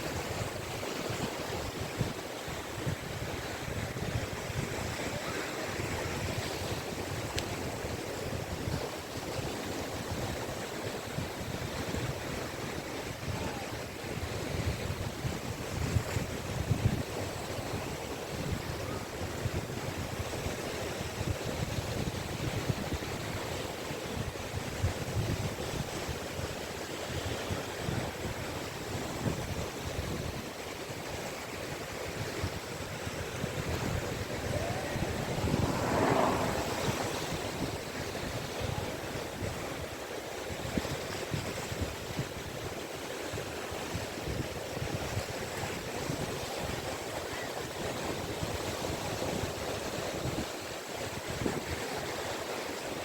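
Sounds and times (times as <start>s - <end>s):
waves washing onto beach: 31.4s - 42.8s.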